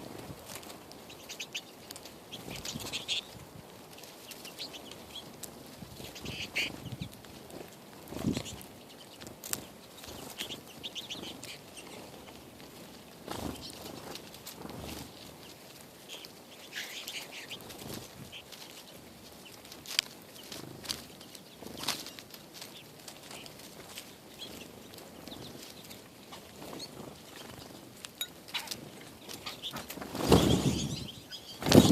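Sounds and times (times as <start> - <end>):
bird wings fluttering: 0.0 - 31.9.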